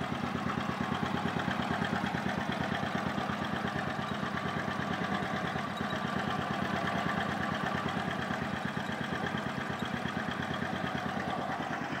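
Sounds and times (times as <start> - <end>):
scooter engine idling: 0.0 - 12.0.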